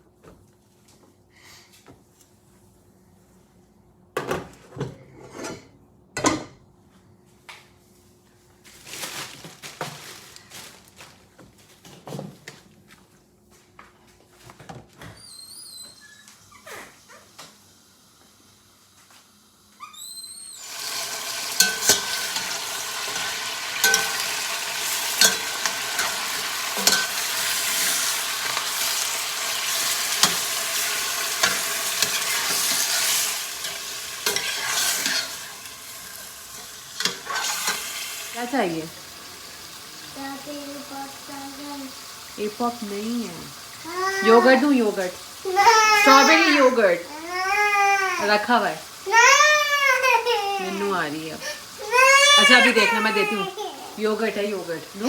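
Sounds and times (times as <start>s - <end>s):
food sizzling in hot oil: 20.6s - 55.0s.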